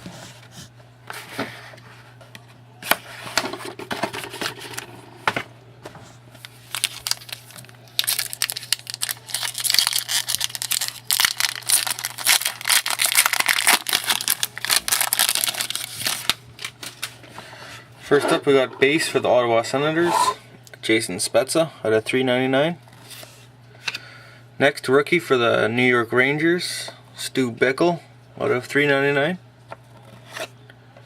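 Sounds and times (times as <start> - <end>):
plastic wrapping crinkling and tearing: 6.4 - 17.2.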